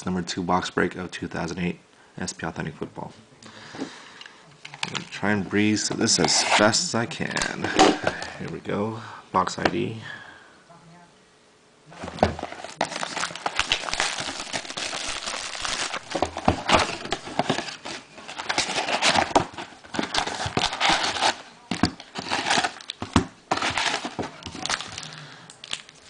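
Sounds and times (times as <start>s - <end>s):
plastic wrapping crinkling and tearing: 12.0s - 26.0s.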